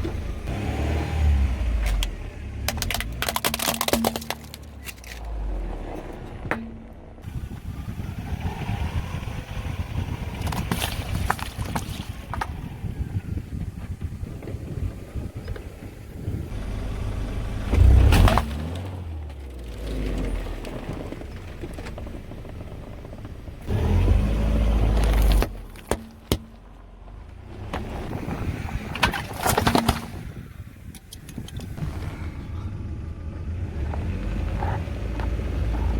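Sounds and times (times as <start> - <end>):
objects cracking under wheels: 1.8 - 5.4, 10.0 - 13.0, 24.6 - 26.9, 27.6 - 32.3
tyres rolling over objects: 2.7 - 5.3, 10.0 - 13.0, 27.6 - 30.5
car engine running slowly: 4.8 - 28.4.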